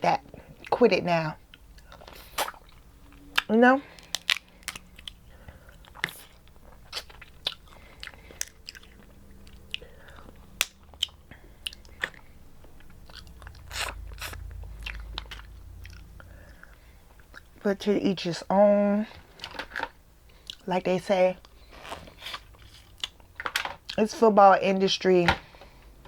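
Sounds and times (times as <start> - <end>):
chewing and biting crab: 1.6 - 17.6
crab shell cracking: 3.1 - 5.2, 5.8 - 13.3.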